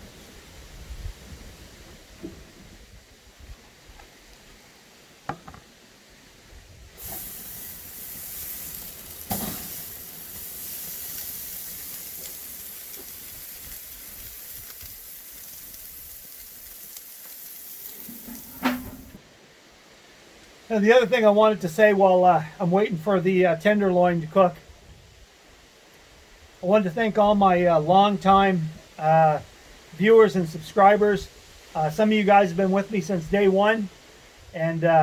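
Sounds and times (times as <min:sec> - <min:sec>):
meat sizzling on a grill: 0:07.0 - 0:19.2
sharp clicks and knocks: 0:07.0 - 0:19.2.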